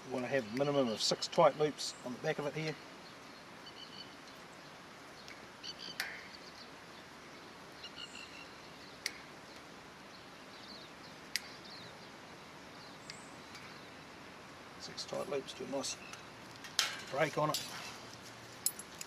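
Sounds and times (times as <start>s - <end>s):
outdoor background noise: 0.0s - 19.0s
bird chirps: 3.0s - 4.5s, 5.2s - 7.0s, 7.8s - 9.6s
fence wire clicking: 16.1s - 17.9s.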